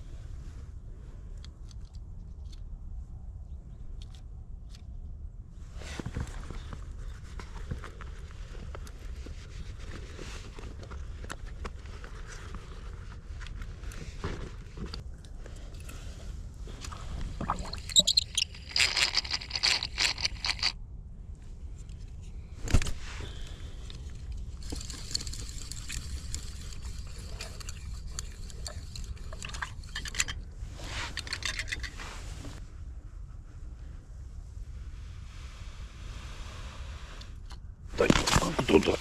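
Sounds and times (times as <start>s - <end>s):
scraping and crunching: 38.0s - 39.0s.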